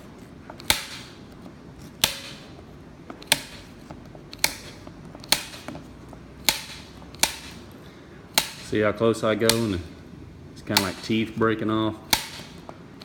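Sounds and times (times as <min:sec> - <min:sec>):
plastic pieces snapping: 0:00.0 - 0:07.7, 0:09.4 - 0:09.9, 0:10.7 - 0:11.2.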